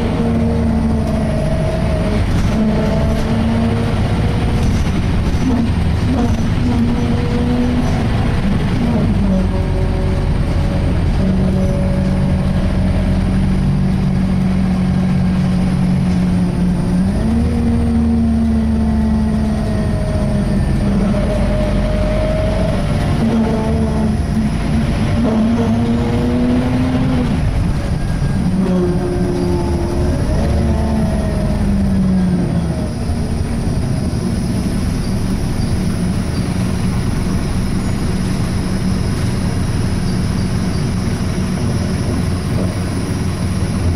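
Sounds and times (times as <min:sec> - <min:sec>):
bus engine groaning: 0:00.0 - 0:43.9.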